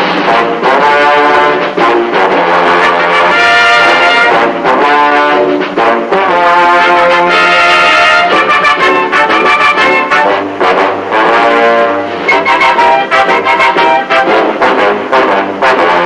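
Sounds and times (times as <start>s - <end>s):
brassy orchestral music: 0.0s - 16.0s
horns playing held notes: 0.0s - 16.0s.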